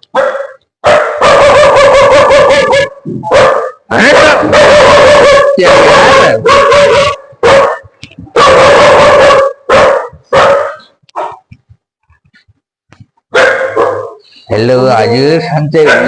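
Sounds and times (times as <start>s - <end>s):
dog barking loudly: 0.0s - 11.5s, 13.3s - 16.0s.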